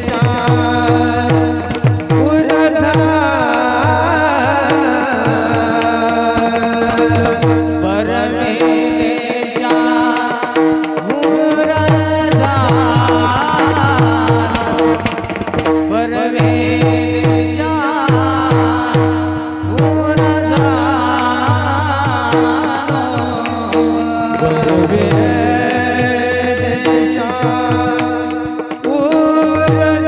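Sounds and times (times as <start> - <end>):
hand drum playing: 0.0 - 30.0
steady held drone: 19.3 - 28.9.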